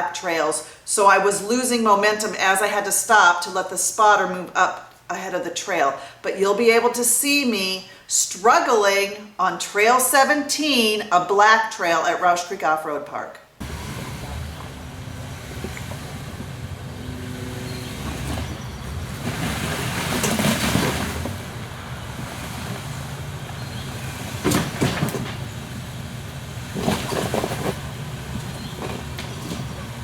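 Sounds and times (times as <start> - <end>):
off-road vehicle engine rumble: 13.6 - 30.0.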